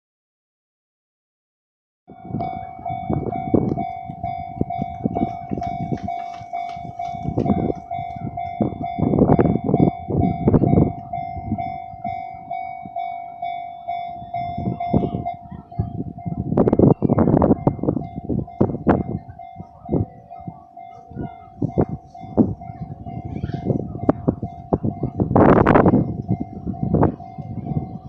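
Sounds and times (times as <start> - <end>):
level crossing warning bell: 2.1 - 28.0
train wheels clattering on rails: 4.6 - 8.2.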